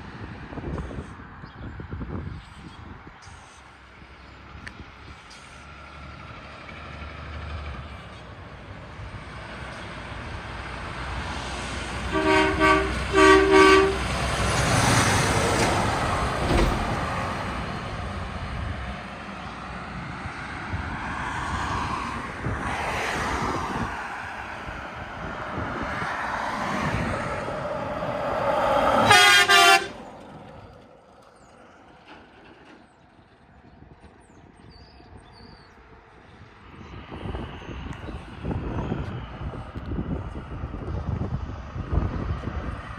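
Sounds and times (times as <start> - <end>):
truck passing by: 3.6 - 42.9
truck air horn blasts: 12.0 - 14.5, 27.5 - 30.1.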